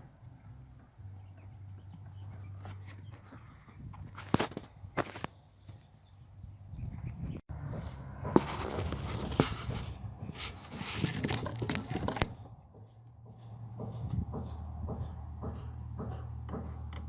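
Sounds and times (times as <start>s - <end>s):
rustling and scraping: 1.8s - 5.9s, 7.7s - 14.6s.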